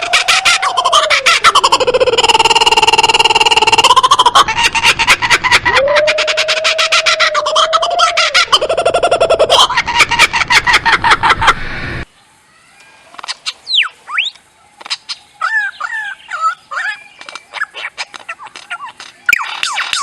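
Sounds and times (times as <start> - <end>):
lyrebird clicking notes: 17.2 - 20.0.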